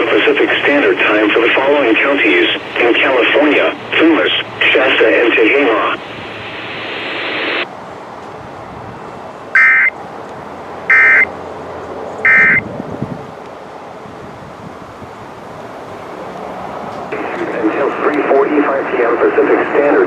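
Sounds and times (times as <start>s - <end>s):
radio static: 0.0s - 7.7s, 17.1s - 20.0s.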